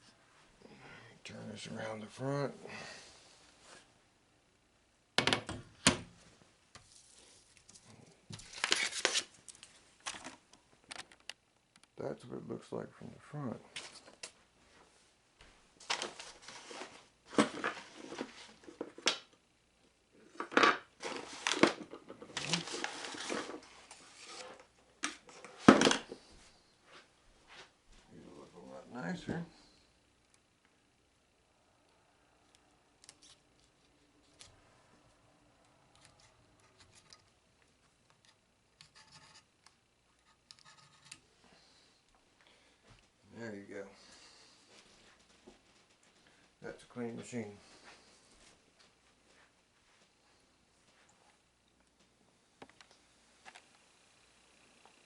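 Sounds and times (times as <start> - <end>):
rustling and scraping: 15.8 - 19.0, 20.3 - 27.8.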